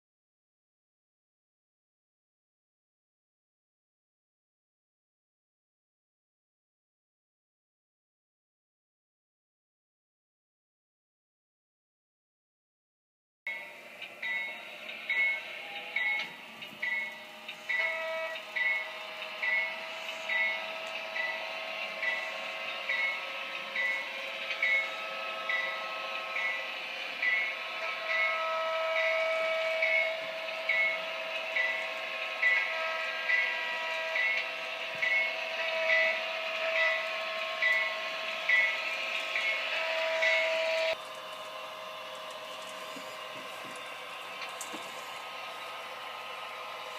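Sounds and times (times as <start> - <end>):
model locomotive sound hiss and tone: 13.5 - 46.9.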